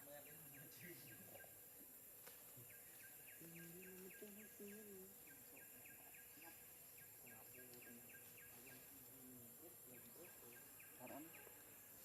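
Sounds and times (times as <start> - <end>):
insect chirping: 0.0 - 12.0.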